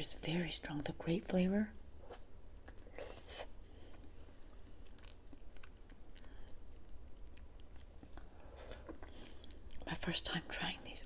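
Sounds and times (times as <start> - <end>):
chewing mouth clicks and smacks: 3.9 - 9.8.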